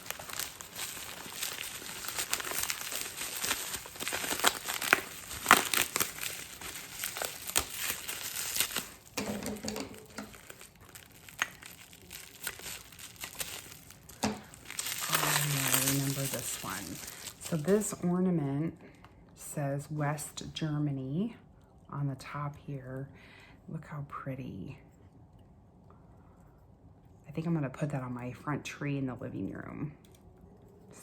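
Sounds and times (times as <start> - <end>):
packaging crinkling and rustling: 0.0 - 18.0.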